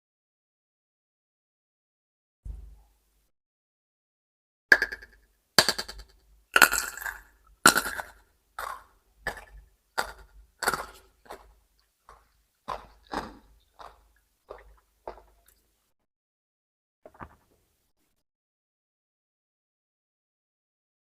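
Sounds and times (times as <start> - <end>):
raw vegetables being chewed: 5.7 - 15.8.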